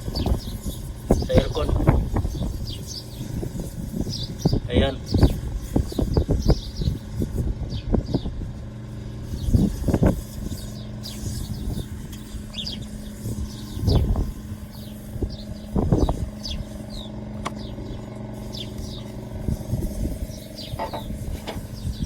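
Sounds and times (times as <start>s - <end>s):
low engine-like hum: 0.0s - 22.0s
high bird chirps: 10.4s - 19.2s.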